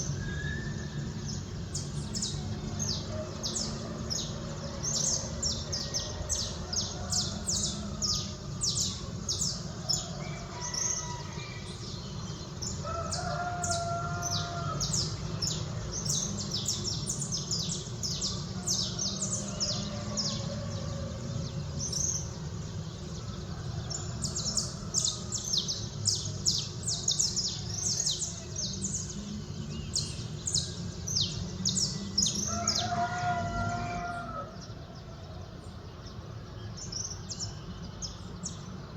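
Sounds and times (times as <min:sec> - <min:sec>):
songbirds chirping: 0:00.0 - 0:38.9
rooster crowing: 0:02.8 - 0:15.6, 0:18.0 - 0:22.1, 0:23.6 - 0:25.7, 0:31.7 - 0:35.1.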